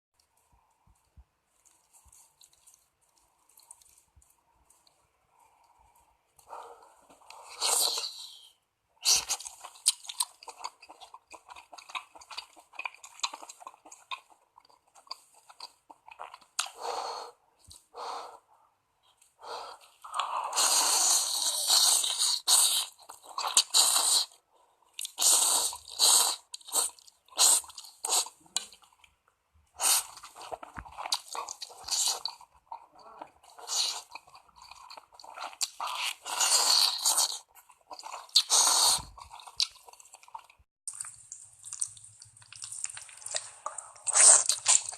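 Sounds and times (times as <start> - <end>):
chewing noodles: 0.2 - 18.2, 19.1 - 44.9
slurping noodles: 5.4 - 18.5, 19.5 - 24.4, 25.0 - 28.9, 29.8 - 41.1.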